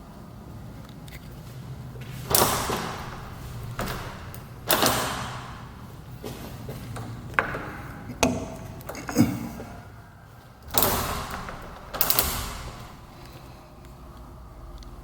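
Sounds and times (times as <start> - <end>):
door sliding: 1.9 - 9.9, 10.6 - 13.6
door clicks and knocks: 2.1 - 5.8, 6.7 - 9.2, 10.7 - 13.2.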